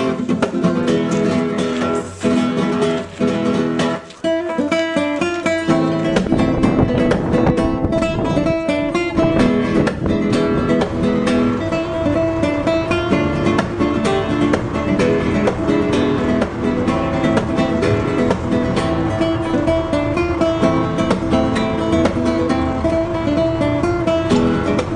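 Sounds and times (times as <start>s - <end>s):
flamenco acoustic guitar: 0.0s - 24.9s.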